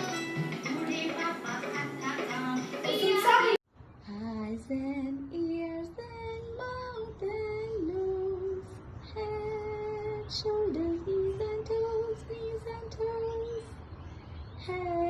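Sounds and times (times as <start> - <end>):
person singing wordless melody: 0.0 - 13.8.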